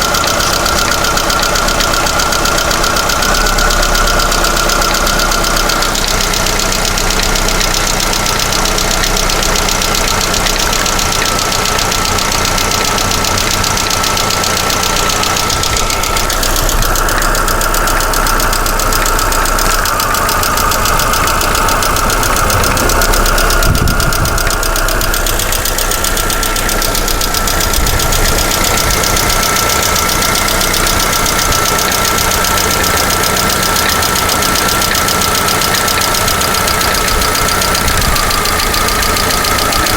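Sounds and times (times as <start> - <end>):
car engine idling with tapping: 0.0 - 39.9
steady whine: 10.6 - 39.9.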